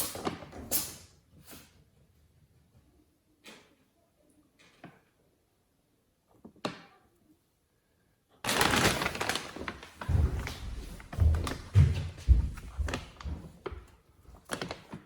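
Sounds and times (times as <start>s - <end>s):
plastic pack crinkling: 8.5s - 11.0s
dull thumps: 10.0s - 13.9s.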